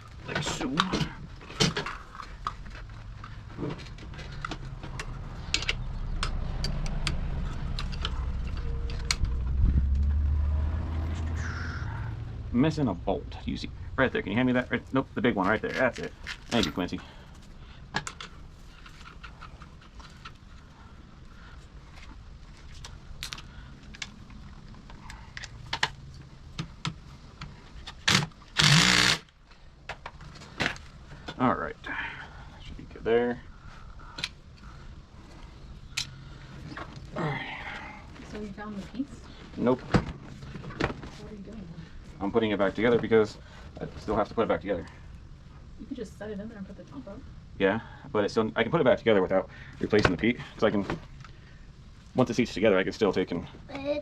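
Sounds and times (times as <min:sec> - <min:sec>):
low rumble: 0:02.4 - 0:16.4
handheld power tool running: 0:28.1 - 0:29.3.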